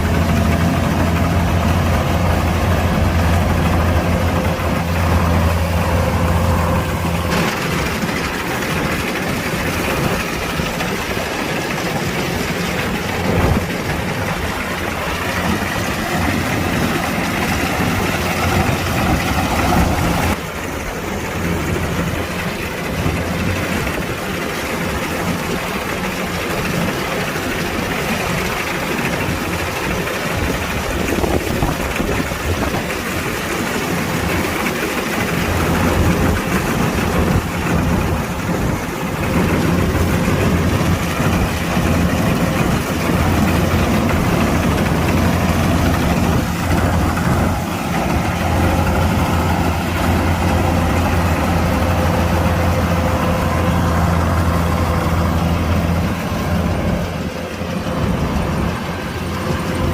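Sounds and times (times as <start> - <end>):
combine harvester diesel engine: 0.0 - 59.9.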